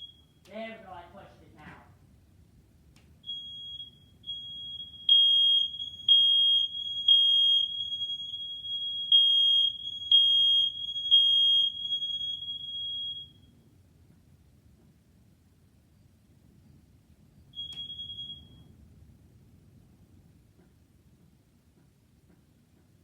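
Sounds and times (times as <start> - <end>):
continuous high alarm tone: 0.0 - 0.5, 3.2 - 13.6, 17.6 - 18.7
smoke alarm beeps: 0.0 - 0.5, 3.2 - 13.6, 17.4 - 18.8.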